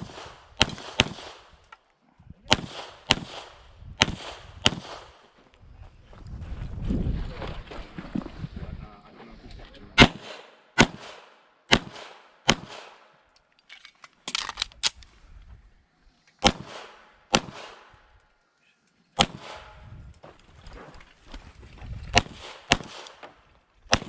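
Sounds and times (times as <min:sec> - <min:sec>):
pistol shots with echo: 0:00.0 - 0:01.6, 0:02.5 - 0:05.2, 0:10.0 - 0:13.1, 0:16.4 - 0:18.0, 0:19.2 - 0:19.8, 0:22.2 - 0:23.2.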